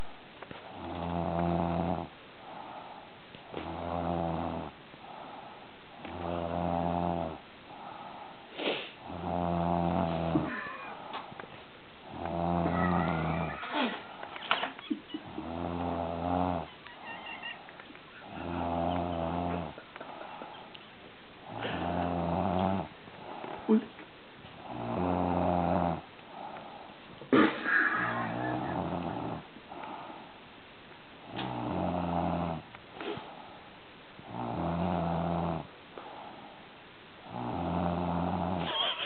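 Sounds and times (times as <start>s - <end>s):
woman snoring: 0.6s - 2.8s, 3.5s - 8.3s, 9.0s - 11.2s, 12.0s - 14.3s, 15.2s - 17.6s, 18.2s - 19.8s, 21.5s - 23.9s, 24.6s - 26.7s, 27.9s - 30.2s, 31.3s - 33.3s, 34.3s - 36.2s, 37.3s - 38.7s.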